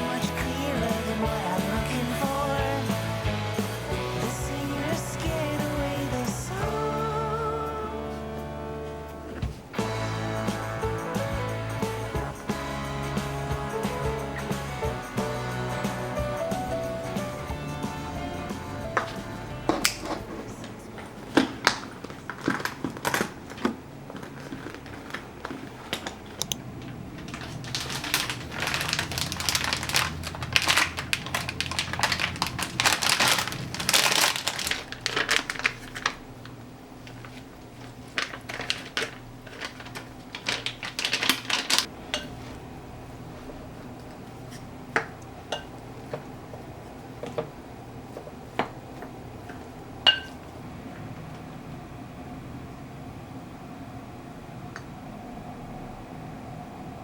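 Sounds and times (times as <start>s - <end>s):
paper rustling and crinkling: 18.9s - 42.6s.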